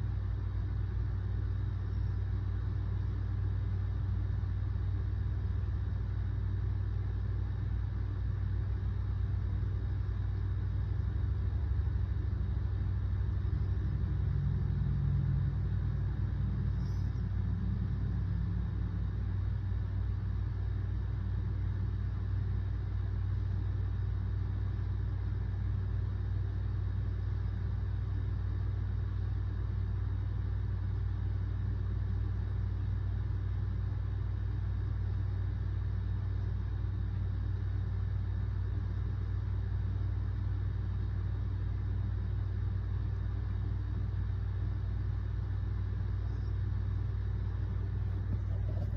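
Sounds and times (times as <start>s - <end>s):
low rumbling hum: 0.0s - 30.4s, 41.7s - 48.9s.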